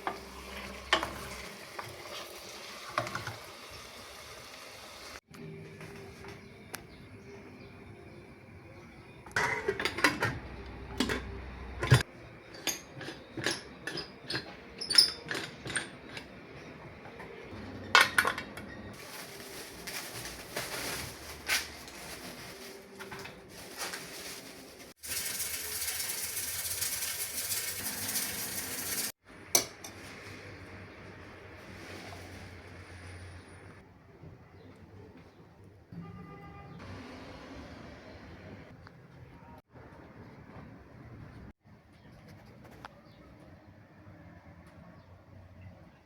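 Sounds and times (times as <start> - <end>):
dishes clinking and knocking: 9.3 - 16.4, 17.1 - 18.7.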